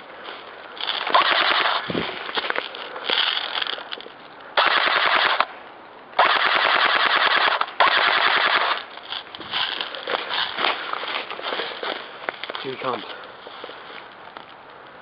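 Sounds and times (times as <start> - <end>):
airsoft rifle firing bursts: 1.1 - 2.0, 4.6 - 5.5, 6.2 - 8.8.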